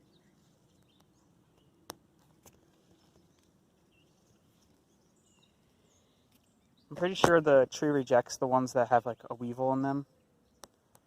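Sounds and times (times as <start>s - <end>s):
faint bird chirps: 2.6s - 7.1s.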